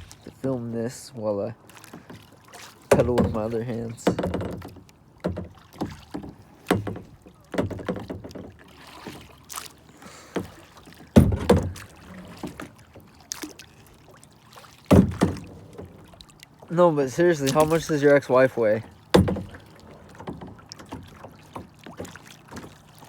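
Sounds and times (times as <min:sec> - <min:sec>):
paddle splashes in water: 0:00.0 - 0:23.0
knocks against kayak hull: 0:02.9 - 0:08.7, 0:10.3 - 0:13.1, 0:14.9 - 0:16.1, 0:18.8 - 0:22.9.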